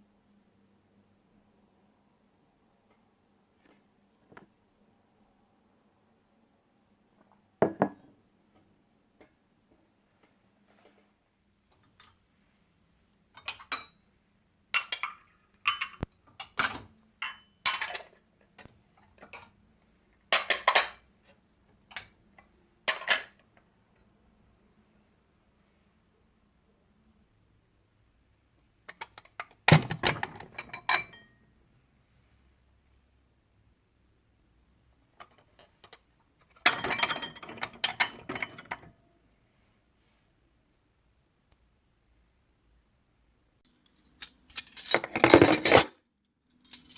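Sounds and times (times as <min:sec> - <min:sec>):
hard objects clinking and clattering: 0:43.9 - 0:45.9, 0:46.5 - 0:46.9.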